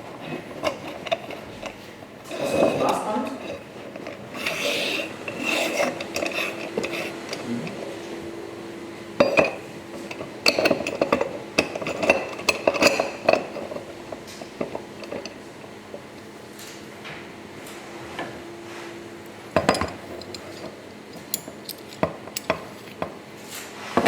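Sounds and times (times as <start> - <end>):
metal parts clinking and knocking: 3.9 - 7.4, 9.2 - 13.9, 19.6 - 23.0.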